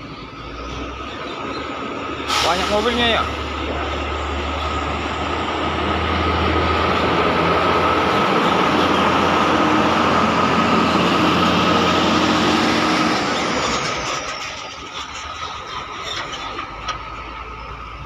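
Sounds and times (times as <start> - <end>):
heavy engine hum with whine: 0.0 - 18.0.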